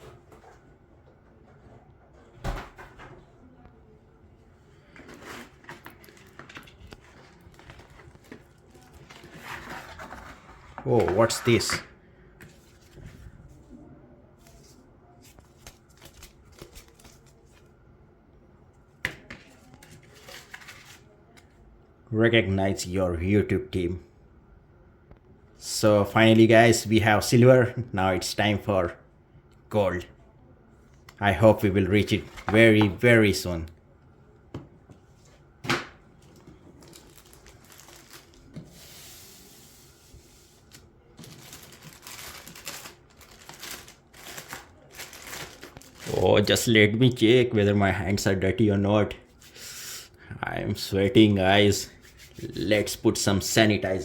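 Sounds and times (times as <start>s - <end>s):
paper rustling: 4.8s - 11.8s, 14.4s - 17.7s, 19.3s - 21.1s, 36.2s - 46.3s.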